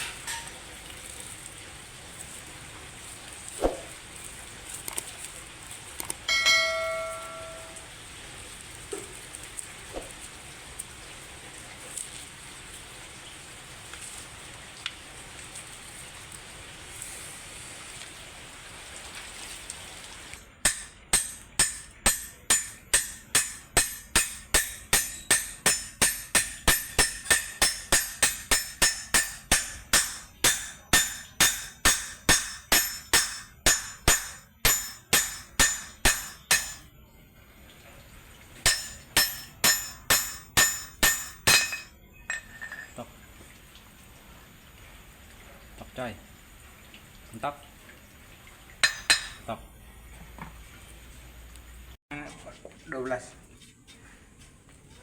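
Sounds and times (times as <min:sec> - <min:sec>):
hammer striking metal: 0:06.3 - 0:07.8, 0:20.6 - 0:36.9, 0:38.6 - 0:42.7, 0:48.8 - 0:49.4.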